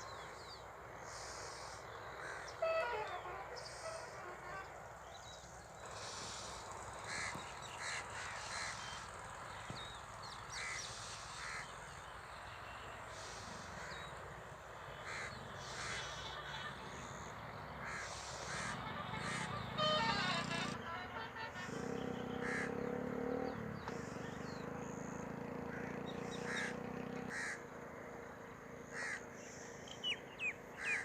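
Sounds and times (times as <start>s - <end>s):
steady background hiss: 0.0s - 20.7s
crows cawing: 7.0s - 9.0s, 10.6s - 10.8s, 11.4s - 11.7s, 15.0s - 17.1s, 17.8s - 20.8s, 22.4s - 22.9s, 25.6s - 27.6s, 28.9s - 29.3s, 30.8s - 31.0s.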